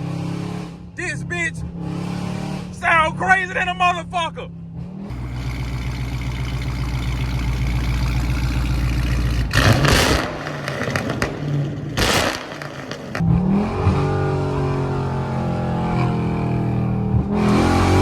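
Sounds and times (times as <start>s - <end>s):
loud raspy car engine: 0.0s - 18.0s
loud exhaust blasts: 5.1s - 15.1s.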